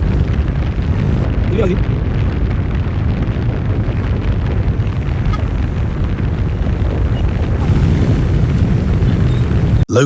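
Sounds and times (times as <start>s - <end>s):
loud low rumble: 0.0s - 9.8s.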